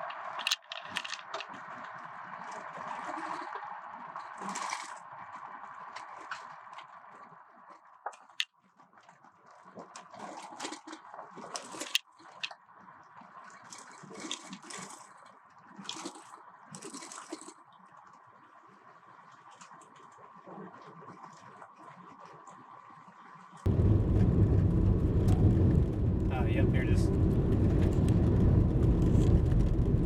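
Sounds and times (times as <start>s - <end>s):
irregular clicks: 0.1s - 1.4s.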